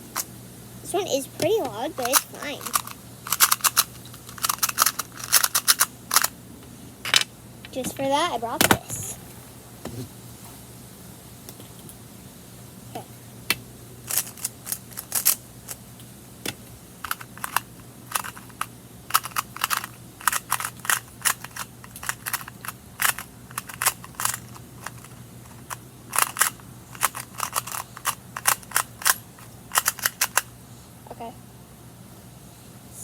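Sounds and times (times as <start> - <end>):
puzzle cube clacking: 1.4 - 6.3, 17.1 - 30.5.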